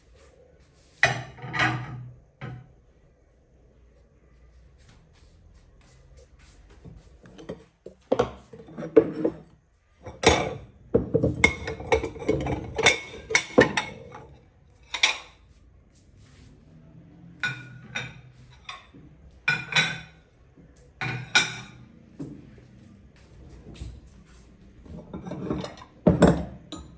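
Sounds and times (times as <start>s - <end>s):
ceramic plates clinking on plates: 1.0s - 2.6s, 7.3s - 15.5s, 17.4s - 20.3s, 21.0s - 21.9s, 24.8s - 26.9s.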